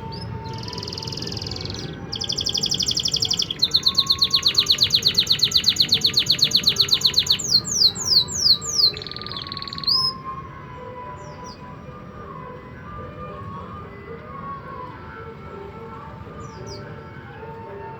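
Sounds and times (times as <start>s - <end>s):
canary singing trills: 0.0s - 10.3s.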